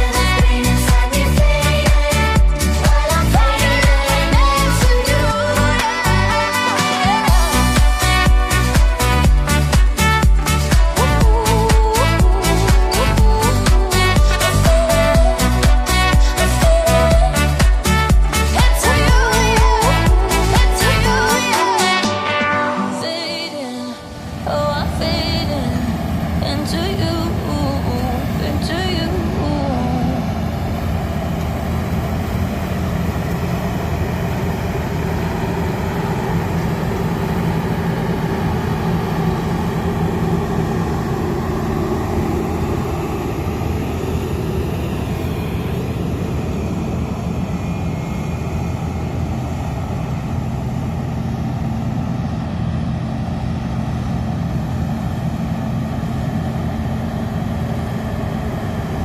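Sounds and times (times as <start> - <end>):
combine harvester engine drone: 0.0 - 59.0.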